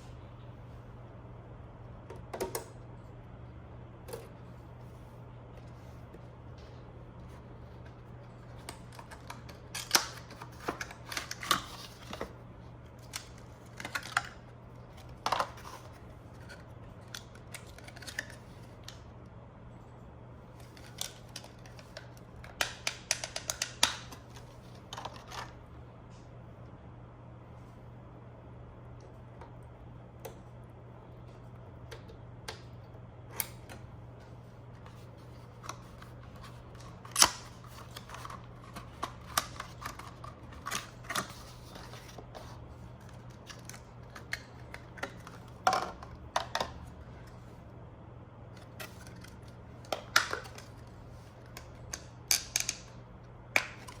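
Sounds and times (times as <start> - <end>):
steady low hum: 0.0 - 54.0
hands clicking and snapping parts: 51.5 - 54.0.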